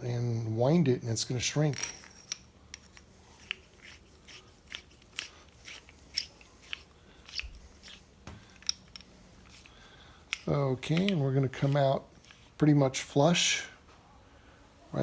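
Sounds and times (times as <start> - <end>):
small sharp clicks of winding tool: 2.3 - 12.4.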